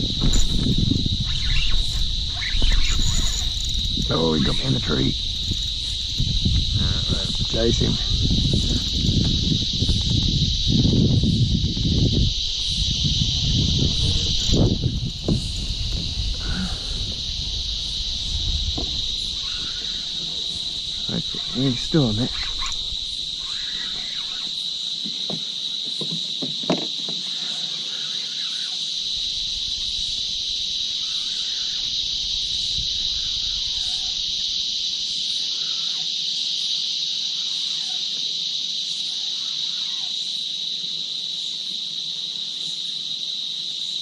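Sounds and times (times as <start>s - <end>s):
high-pitched insect buzz: 0.0s - 44.0s
faint knocks: 18.6s - 21.0s, 25.0s - 27.2s.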